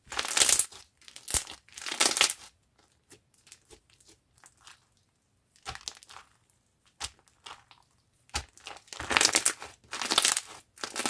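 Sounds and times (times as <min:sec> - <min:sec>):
slime crackling: 0:05.6 - 0:11.0
slime squished by hand: 0:05.6 - 0:11.0.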